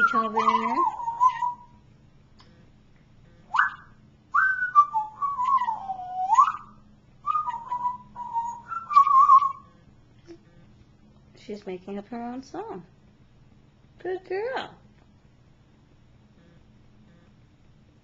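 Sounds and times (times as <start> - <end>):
parrot whistling: 0.0 - 1.8, 3.5 - 9.7.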